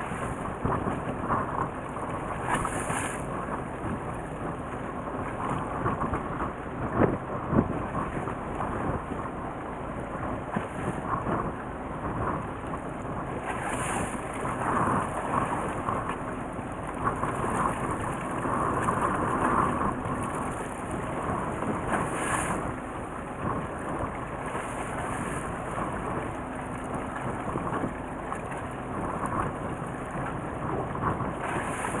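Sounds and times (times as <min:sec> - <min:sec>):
boat engine: 0:00.0 - 0:32.0
wind on microphone: 0:00.0 - 0:32.0
rushing water: 0:13.3 - 0:32.0.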